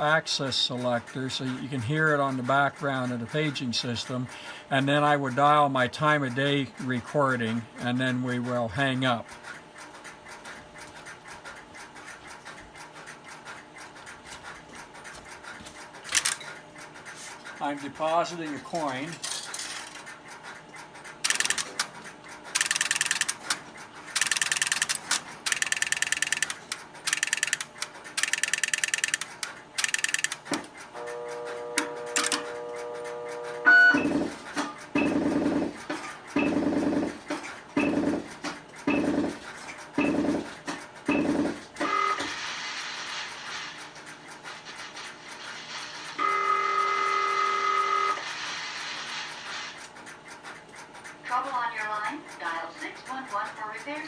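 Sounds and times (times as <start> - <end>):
rotary dial pulses clicking: 0.0 - 54.0.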